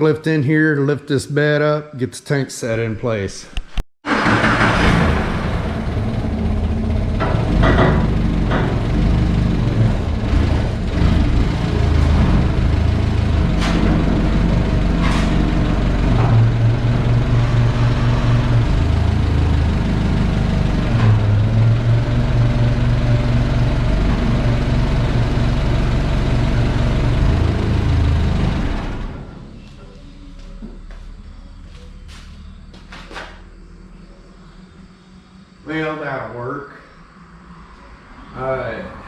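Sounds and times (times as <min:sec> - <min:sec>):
forklift engine running: 0:04.1 - 0:34.4.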